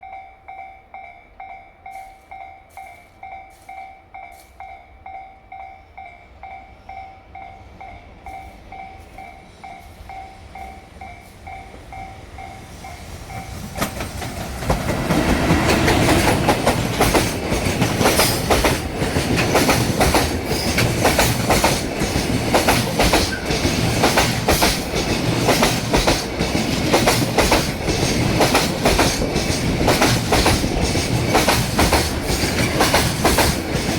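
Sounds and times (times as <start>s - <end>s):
level-crossing bell dinging: 0.0s - 13.8s
train wheels clattering over rail joints: 13.1s - 33.9s.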